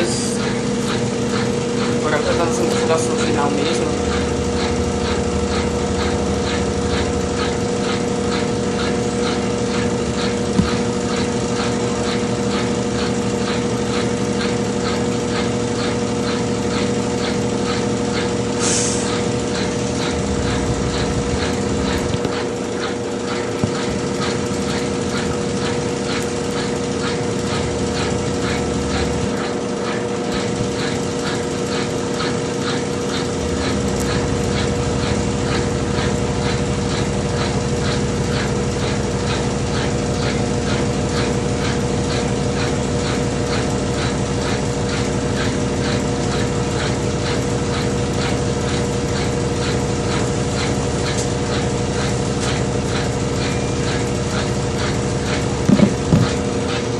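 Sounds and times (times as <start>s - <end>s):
washing machine spinning: 0.0s - 56.9s.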